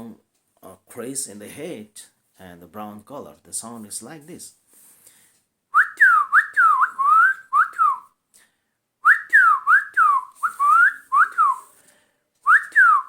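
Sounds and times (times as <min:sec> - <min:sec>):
person whistling bird call: 0:05.8 - 0:08.1, 0:09.0 - 0:11.7, 0:12.4 - 0:13.0.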